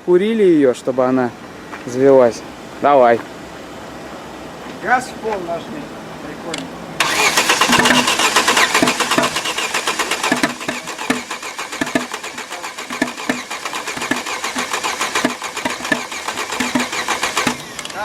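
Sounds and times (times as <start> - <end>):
rapid engine knocking: 7.0 - 17.7
car engine running roughly: 7.0 - 17.8.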